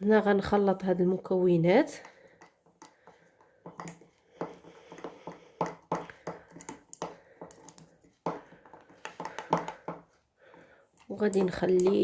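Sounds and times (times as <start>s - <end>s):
spoon stirring thick mixture: 1.6s - 12.0s
spoon clicking against container: 11.0s - 12.0s.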